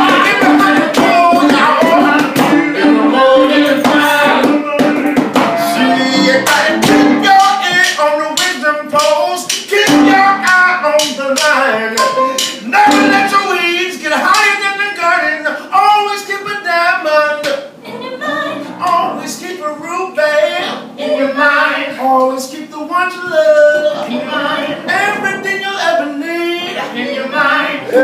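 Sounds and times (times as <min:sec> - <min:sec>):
hand percussion tapping: 0:00.0 - 0:02.7, 0:03.8 - 0:05.6, 0:06.4 - 0:13.5
guitar: 0:00.0 - 0:15.0, 0:17.4 - 0:22.4, 0:23.1 - 0:28.0
voices singing: 0:00.0 - 0:28.0.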